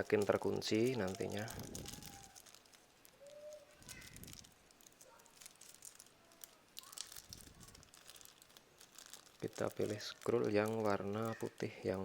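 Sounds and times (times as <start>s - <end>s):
faint bird calls: 1.1s - 4.4s.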